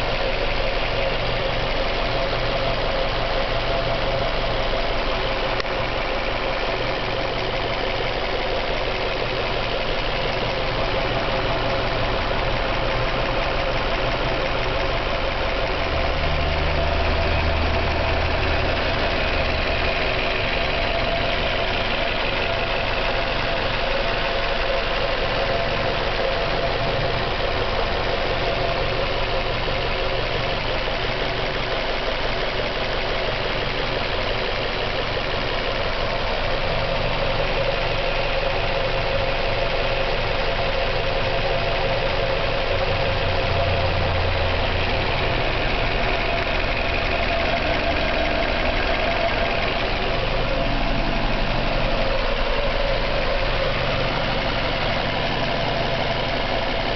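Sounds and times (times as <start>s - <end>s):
car engine idling: 0.0s - 56.9s
rapid engine knock: 0.0s - 56.9s
deep hum: 41.3s - 56.9s.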